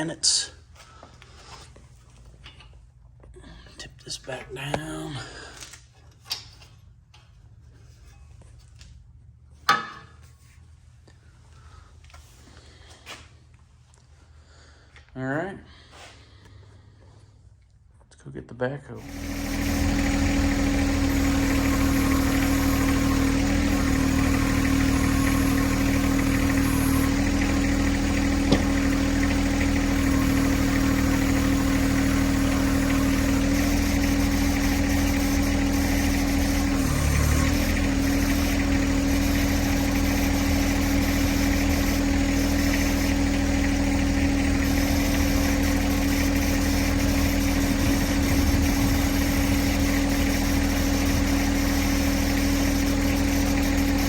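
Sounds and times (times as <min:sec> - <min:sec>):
tractor diesel engine running: 0:19.0 - 0:54.0.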